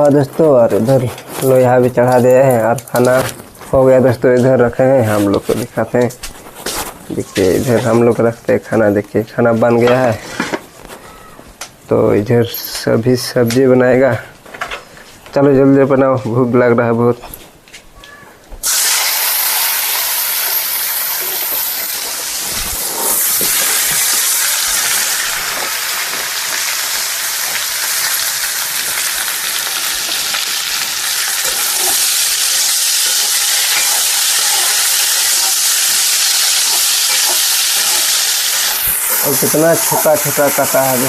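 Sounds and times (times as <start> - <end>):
potatoes sizzling in hot oil: 18.6 - 41.0.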